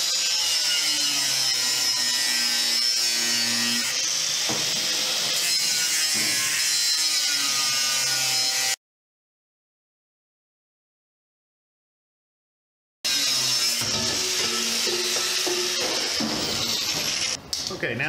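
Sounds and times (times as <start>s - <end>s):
grinder cutting sheet metal: 0.0s - 8.8s, 13.1s - 17.4s.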